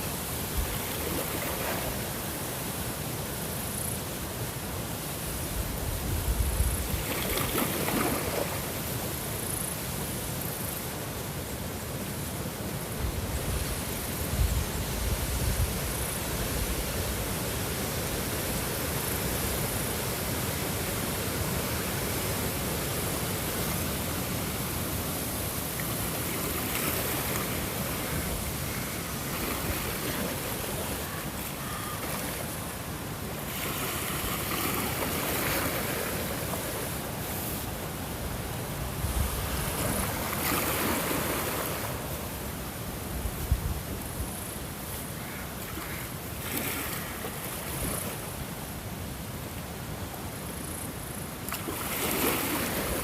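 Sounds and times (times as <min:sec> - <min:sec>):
rushing water: 0:00.0 - 0:53.0.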